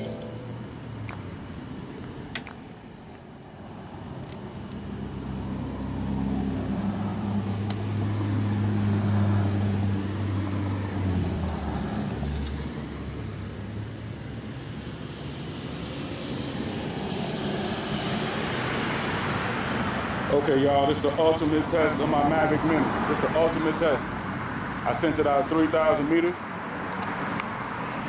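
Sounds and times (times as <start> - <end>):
traffic noise: 0.0 - 28.0
vehicle engine passing by: 5.0 - 13.1.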